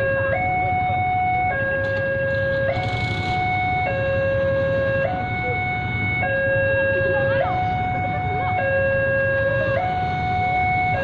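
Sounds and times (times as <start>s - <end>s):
two-tone level-crossing siren: 0.0s - 11.0s.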